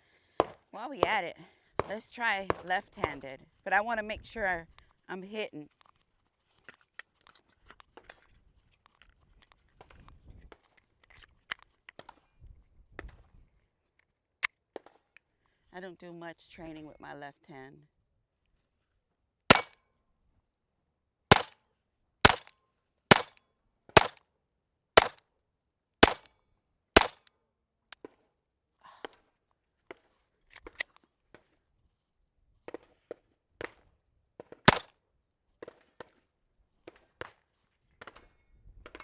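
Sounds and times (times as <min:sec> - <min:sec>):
gun handling clicks: 0:19.5 - 0:19.8, 0:22.3 - 0:22.5, 0:25.0 - 0:25.2, 0:26.0 - 0:26.3, 0:27.0 - 0:27.3, 0:30.5 - 0:31.0, 0:34.7 - 0:34.9
pistol shots: 0:19.5 - 0:19.8, 0:21.3 - 0:21.6, 0:22.2 - 0:22.5, 0:23.1 - 0:23.4, 0:25.0 - 0:25.2, 0:26.0 - 0:26.3, 0:27.0 - 0:27.2, 0:34.7 - 0:34.9.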